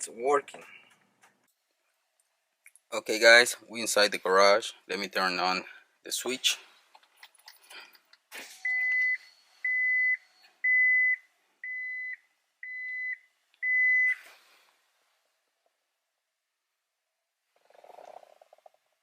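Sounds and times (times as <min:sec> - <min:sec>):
dashboard warning chime beeping: 0:08.6 - 0:14.2.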